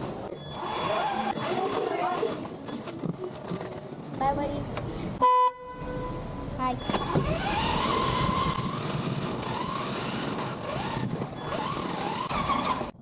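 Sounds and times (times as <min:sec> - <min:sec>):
rc car electric motor whining: 0:00.4 - 0:02.5, 0:07.0 - 0:13.0.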